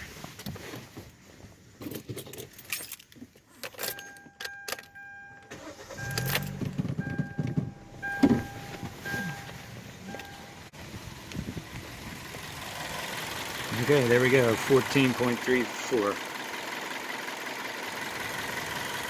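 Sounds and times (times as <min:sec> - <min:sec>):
keys jangling in ignition: 0:01.8 - 0:09.5
car engine cranking and starting: 0:01.8 - 0:19.0
two-tone warning chime: 0:03.9 - 0:10.7.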